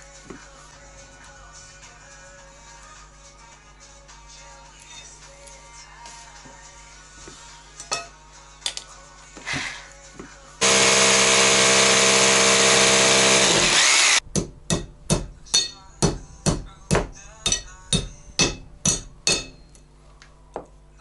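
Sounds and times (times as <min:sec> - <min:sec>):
power tool running: 0:10.6 - 0:14.2.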